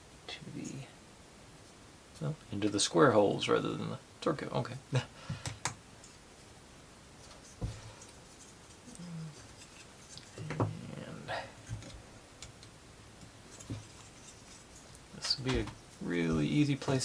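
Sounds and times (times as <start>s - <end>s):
faint scraping: 7.2s - 11.9s.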